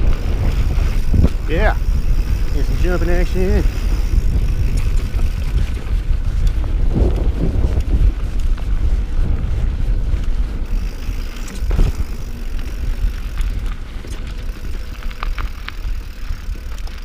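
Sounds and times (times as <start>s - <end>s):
bike rattling: 0.0s - 17.0s
wind on microphone: 0.0s - 17.0s
tyres over rock: 10.7s - 17.0s.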